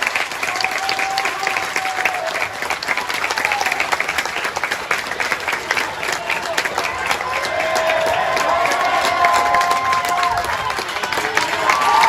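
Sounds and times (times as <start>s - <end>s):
crowd clapping: 0.0s - 12.0s.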